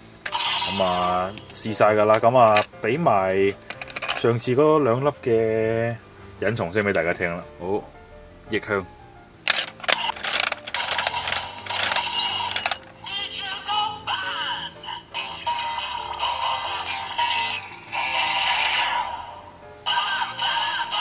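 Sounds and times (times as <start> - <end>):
toy electronic sound effects: 0.2 - 1.6, 9.5 - 13.5, 14.1 - 21.0.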